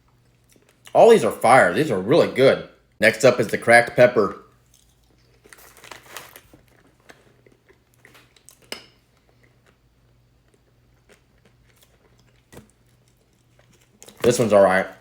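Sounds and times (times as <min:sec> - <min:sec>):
chewing clicks: 0:10.4 - 0:14.3.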